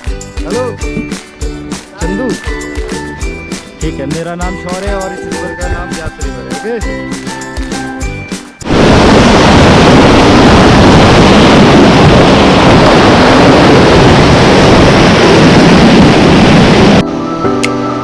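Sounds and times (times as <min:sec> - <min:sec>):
wind on microphone: 0:08.6 - 0:17.1.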